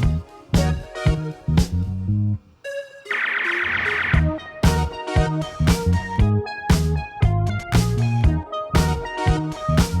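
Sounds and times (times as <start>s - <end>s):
drums and bass beat: 0.0s - 2.0s, 4.2s - 10.0s.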